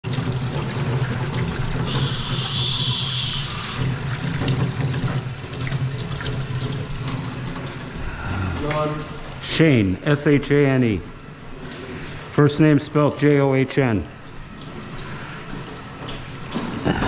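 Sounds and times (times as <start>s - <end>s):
water running and splashing: 0.0s - 17.0s
water hissing: 1.8s - 4.2s.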